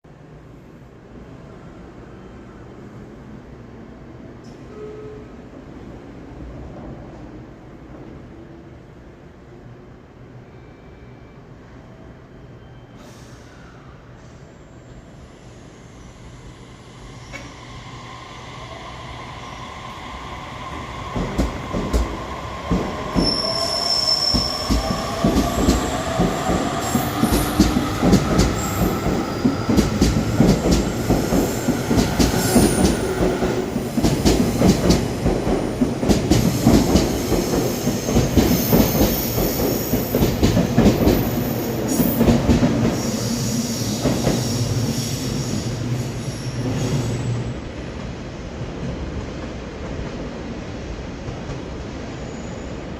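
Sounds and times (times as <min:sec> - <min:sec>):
high wheel squeals: 0:23.0 - 0:29.6
train wheels clattering: 0:24.3 - 0:41.4.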